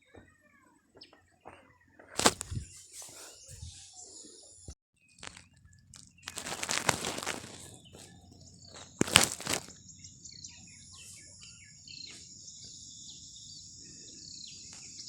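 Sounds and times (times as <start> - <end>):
small birds chirping: 0.0 - 15.0
insect droning: 5.2 - 10.4.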